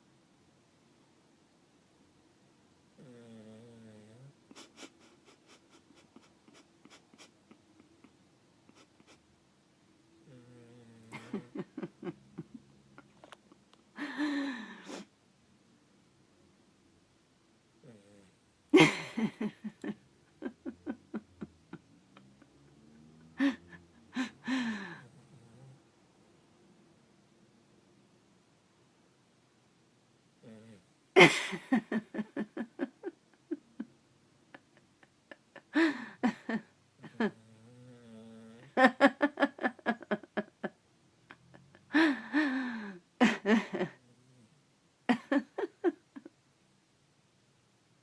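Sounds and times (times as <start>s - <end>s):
dog snoring: 3.0s - 4.4s, 10.2s - 11.4s, 17.8s - 18.4s, 25.0s - 25.9s, 30.4s - 30.9s, 37.1s - 38.8s
person laughing: 4.5s - 9.2s, 11.1s - 13.4s, 18.8s - 25.1s, 31.2s - 33.9s, 34.5s - 37.4s, 38.7s - 44.0s, 45.1s - 46.3s.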